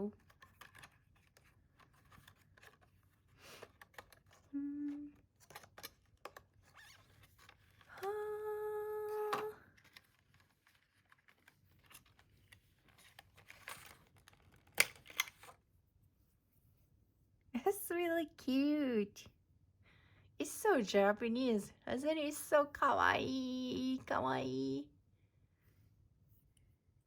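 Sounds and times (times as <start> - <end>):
packaging rustling and clicking: 0.1 - 4.5, 5.3 - 8.0, 9.3 - 15.6
woman humming: 4.5 - 5.2, 7.9 - 9.6.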